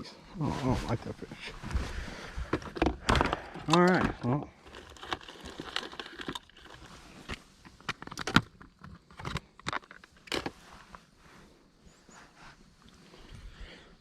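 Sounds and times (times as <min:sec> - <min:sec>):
handling clicks and knocks: 0:02.4 - 0:10.6.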